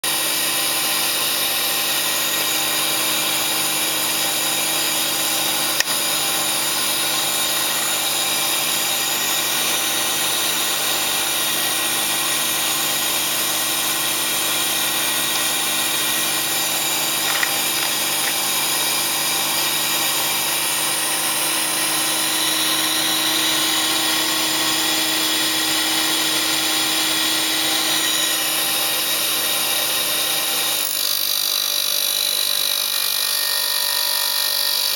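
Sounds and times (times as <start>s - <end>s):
electric motor humming with hiss: 15.8s - 22.1s.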